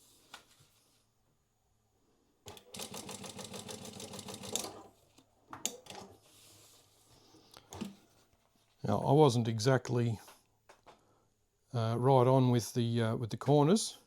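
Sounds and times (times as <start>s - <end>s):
sewing machine stitching: 2.5s - 4.9s.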